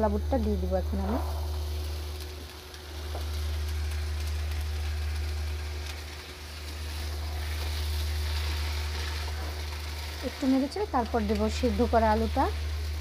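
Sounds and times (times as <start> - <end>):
spices sizzling in a pan: 0.0 - 13.0
steady low hum: 0.0 - 13.0.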